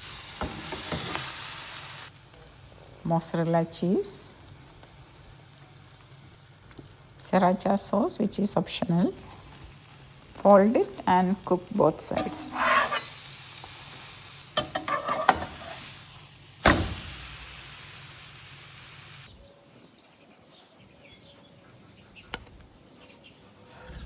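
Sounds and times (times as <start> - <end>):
food sizzling in frying pan: 0.0 - 19.3
spatula clicks and scrapes: 14.6 - 15.9.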